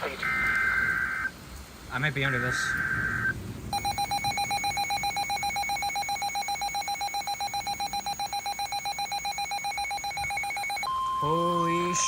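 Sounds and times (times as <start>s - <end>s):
pulsing buzzy phone alarm tone: 2.7s - 12.0s.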